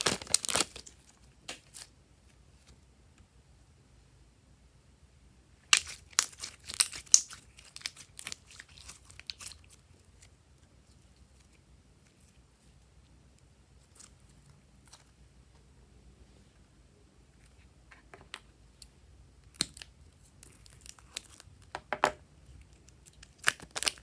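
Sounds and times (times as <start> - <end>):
slime crackling and popping: 0.0 - 1.9, 5.6 - 9.8, 23.0 - 24.0.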